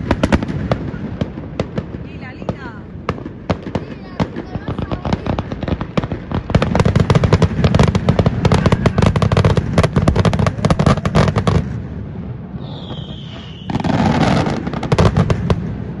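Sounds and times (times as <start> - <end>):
fireworks bangs and crackles: 0.0 - 16.0
fireworks rumble: 0.0 - 16.0
falling whistle: 12.6 - 14.1.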